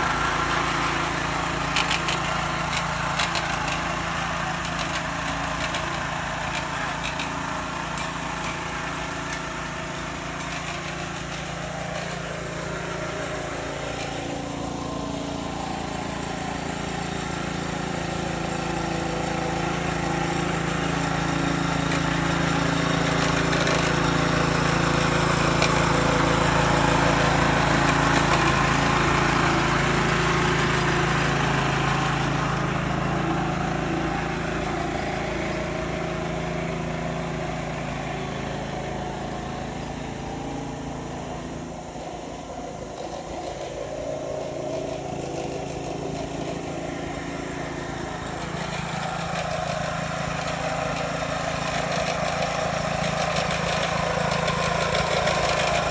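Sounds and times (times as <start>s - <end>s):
grass cutter engine running: 0.0s - 55.9s.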